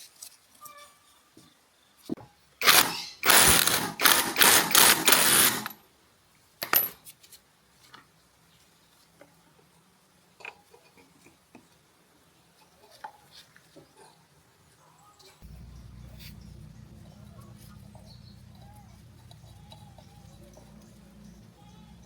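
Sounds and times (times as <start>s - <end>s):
metal tools clattering: 6.6s - 7.0s.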